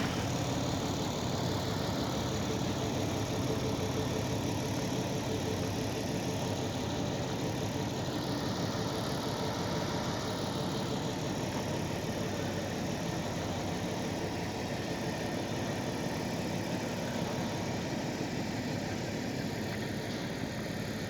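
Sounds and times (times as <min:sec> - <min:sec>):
engine idling: 0:00.0 - 0:21.0.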